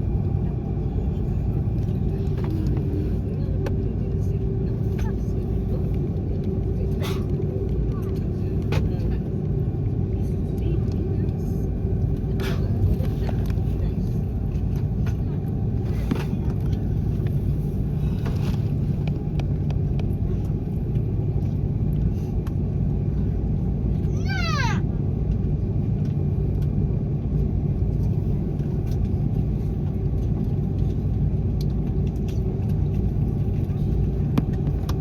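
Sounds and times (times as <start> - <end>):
airplane cabin rumble: 0.0 - 35.0.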